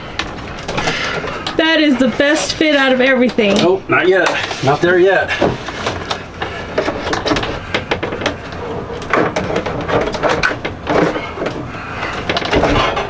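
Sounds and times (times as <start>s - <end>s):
scraping and rubbing: 4.3s - 13.0s.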